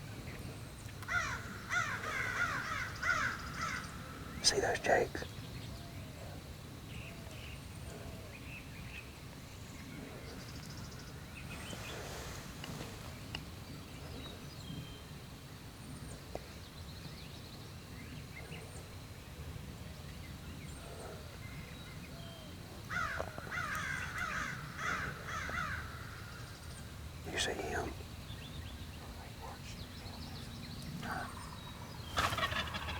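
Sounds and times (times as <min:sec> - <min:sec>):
wild birds calling: 0:00.2 - 0:15.1, 0:19.6 - 0:32.9
short harsh bird calls: 0:31.0 - 0:32.9.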